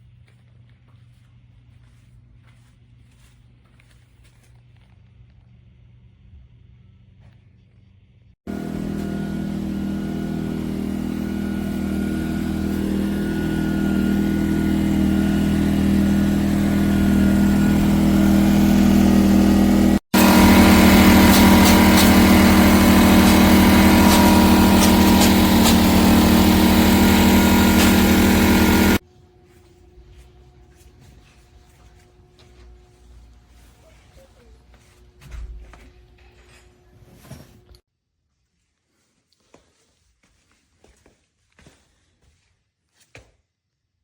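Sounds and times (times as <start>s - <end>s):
generator engine running: 8.5s - 29.0s.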